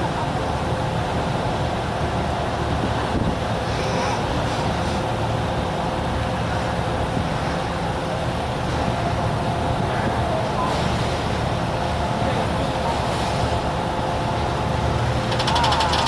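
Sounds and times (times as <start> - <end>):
ferry engines low rumble: 0.0 - 16.0.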